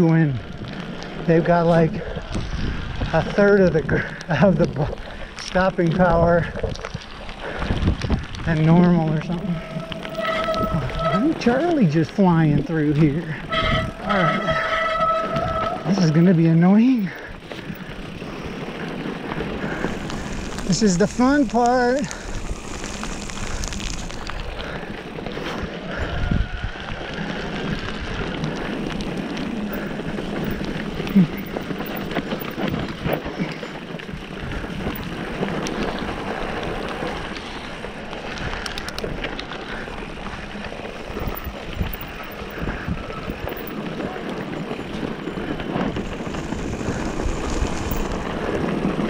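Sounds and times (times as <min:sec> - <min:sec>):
bike rattling over bumps: 0:00.0 - 0:49.0
bike tyres on dirt: 0:00.0 - 0:49.0
wind on microphone: 0:02.0 - 0:03.4, 0:06.1 - 0:11.7, 0:12.6 - 0:16.0, 0:17.6 - 0:33.5, 0:38.3 - 0:49.0.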